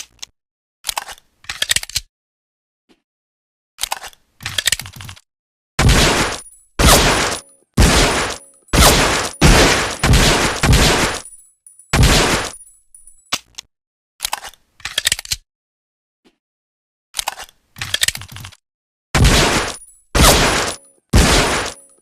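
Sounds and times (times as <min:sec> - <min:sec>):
pistol shots echoing: 0:05.8 - 0:11.3, 0:12.0 - 0:12.6, 0:19.2 - 0:21.9.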